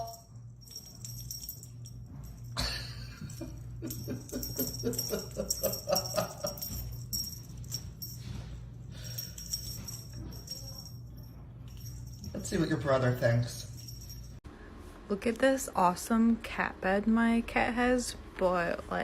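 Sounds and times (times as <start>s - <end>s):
collar bell jingling: 0.0s - 14.4s.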